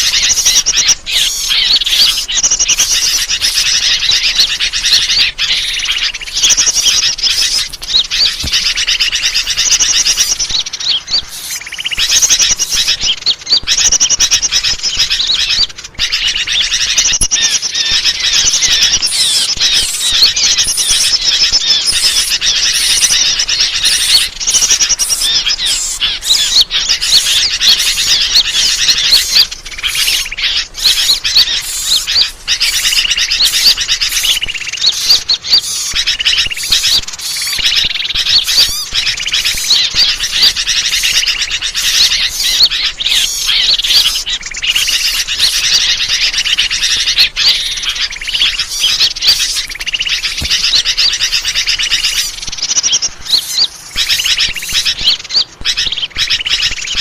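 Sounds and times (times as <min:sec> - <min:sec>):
small birds chirping: 0:00.0 - 0:57.0.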